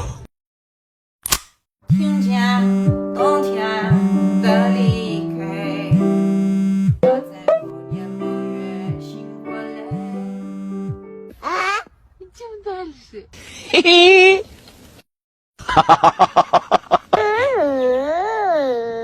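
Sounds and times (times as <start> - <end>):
background music with low bass: 1.9 - 11.3.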